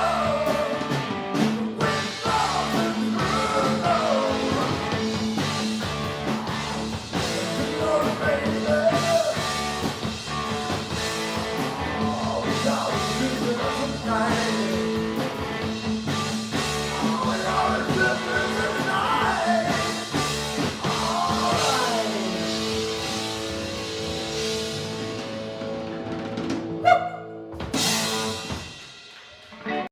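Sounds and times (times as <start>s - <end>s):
person singing: 0.0s - 5.1s, 7.2s - 9.5s, 11.7s - 15.0s, 17.0s - 20.1s, 20.8s - 22.8s
drums: 0.0s - 29.9s
guitar: 0.0s - 29.9s.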